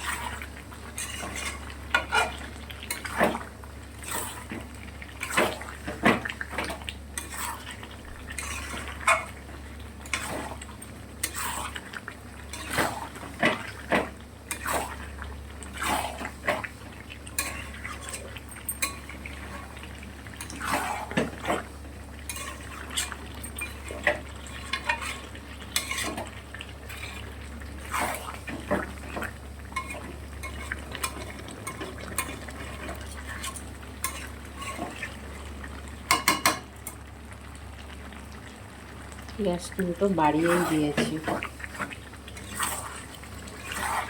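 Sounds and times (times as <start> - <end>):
utensil scraping a pan: 0.0 - 3.4, 7.2 - 9.3, 20.4 - 21.7, 22.3 - 35.2, 40.3 - 44.0.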